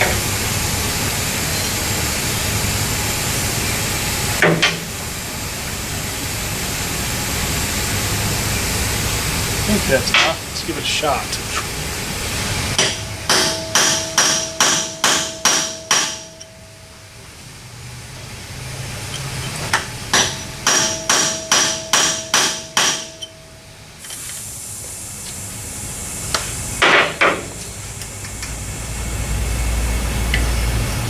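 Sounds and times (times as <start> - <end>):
hiss: 24.0 - 28.0.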